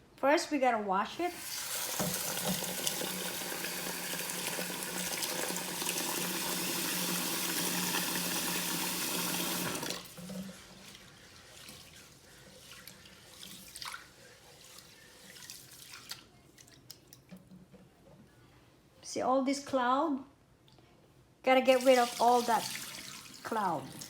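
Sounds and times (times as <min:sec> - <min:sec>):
rice stirred in water by hand: 0:01.3 - 0:17.3, 0:21.7 - 0:24.0
tap running into a pot: 0:01.8 - 0:03.1.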